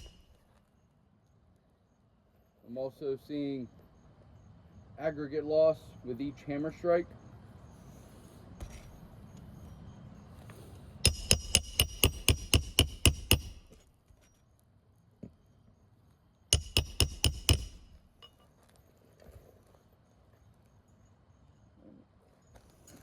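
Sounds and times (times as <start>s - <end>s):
hammer striking nail: 0.0s - 0.3s, 11.0s - 13.9s, 16.5s - 18.3s.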